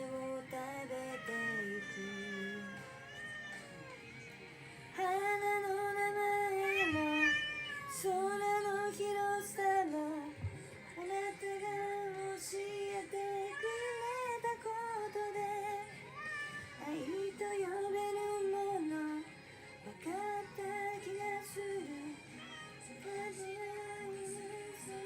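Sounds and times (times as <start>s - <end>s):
person singing: 0.0s - 25.0s
cat yowling meows: 0.9s - 4.2s, 6.5s - 8.1s, 13.4s - 14.5s, 16.2s - 17.1s.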